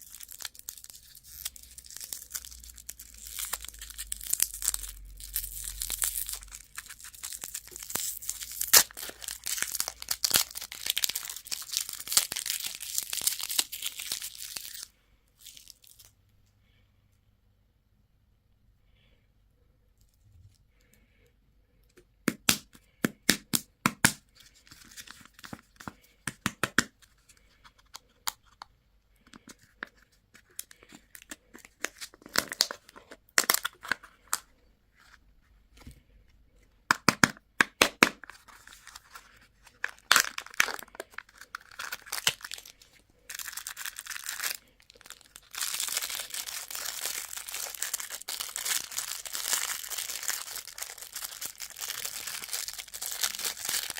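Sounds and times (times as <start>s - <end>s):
candy wrapper crinkling: 0.0s - 16.2s, 24.0s - 35.2s, 36.9s - 53.9s.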